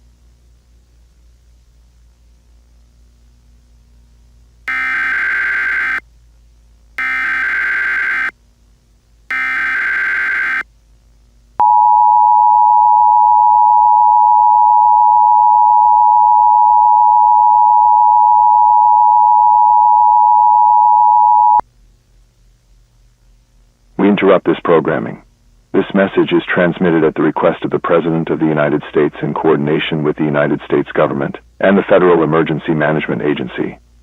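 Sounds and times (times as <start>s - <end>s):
digital data tone bursts: 4.7s - 6.0s, 7.0s - 8.3s, 9.3s - 10.6s
two-tone alert signal: 4.7s - 6.0s, 7.0s - 8.3s, 9.3s - 10.6s.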